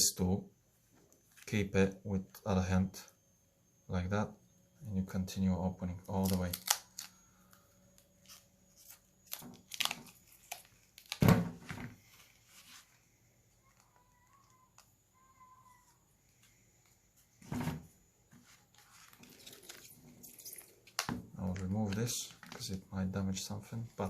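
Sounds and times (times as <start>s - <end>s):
plastic clips snapping: 6.2s - 7.2s.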